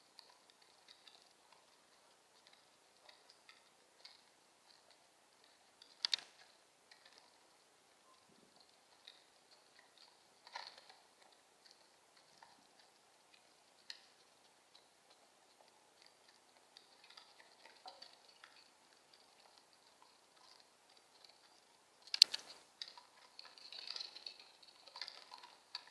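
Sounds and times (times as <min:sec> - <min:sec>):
faint small clicks: 0:00.1 - 0:25.9.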